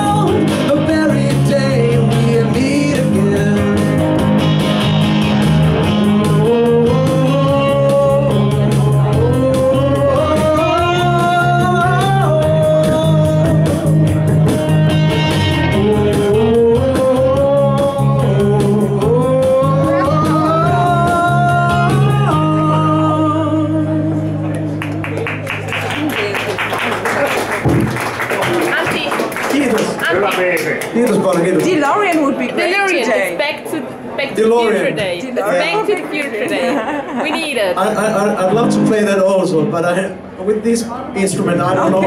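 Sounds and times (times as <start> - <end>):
instrumental song with drum machine: 0.0 - 23.0.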